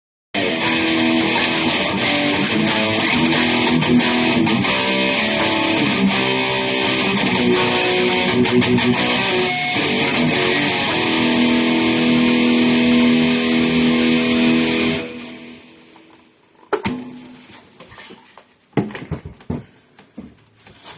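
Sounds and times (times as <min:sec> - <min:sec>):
electric guitar through an amp: 0:00.4 - 0:16.3.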